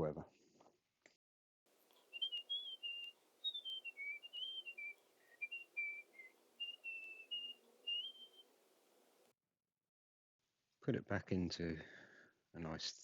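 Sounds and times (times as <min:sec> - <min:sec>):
person whistling a tune: 0:02.2 - 0:08.4.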